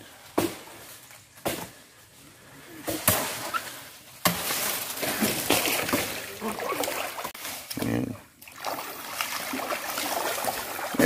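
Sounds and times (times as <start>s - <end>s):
rustling of fronds: 0.0s - 11.0s
chopping strikes on palm fronds: 0.3s - 0.8s, 1.4s - 1.8s, 2.9s - 3.6s, 4.2s - 6.1s.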